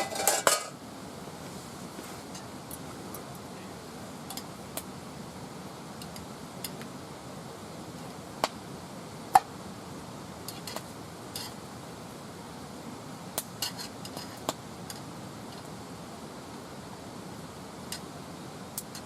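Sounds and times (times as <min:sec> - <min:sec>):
metal cookware clinking: 0:00.0 - 0:00.7
steady low hiss: 0:00.0 - 0:19.0.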